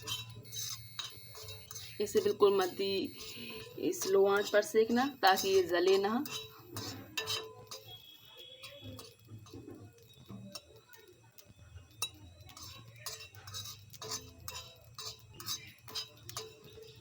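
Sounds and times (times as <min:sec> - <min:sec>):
low steady hum: 0:00.0 - 0:10.5
metal spoon scraping a pan: 0:00.0 - 0:17.0.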